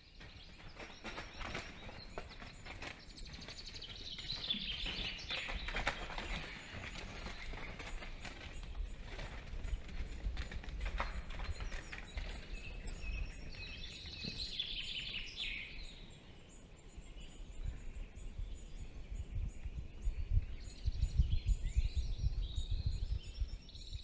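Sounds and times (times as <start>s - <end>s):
songbirds singing: 0.0s - 24.0s.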